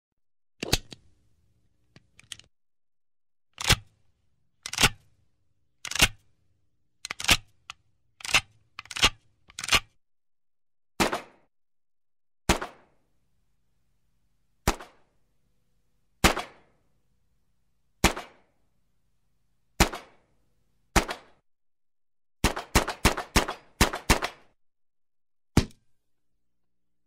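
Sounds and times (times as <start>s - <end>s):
handgun action clicking: 4.6s - 5.0s, 7.0s - 9.9s.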